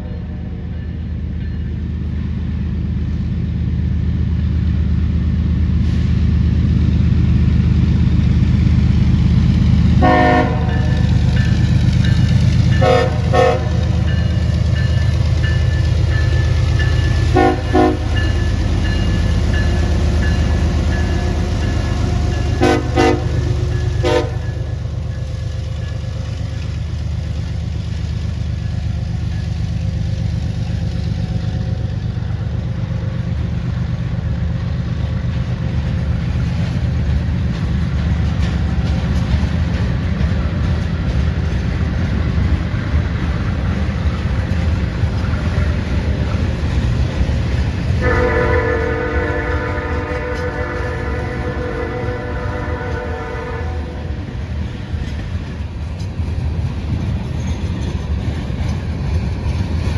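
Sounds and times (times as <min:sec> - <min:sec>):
freight train rumbling past: 0:00.0 - 0:59.9
locomotive horn toots: 0:10.0 - 0:11.1, 0:12.7 - 0:14.9, 0:16.8 - 0:24.9, 0:47.9 - 0:54.4.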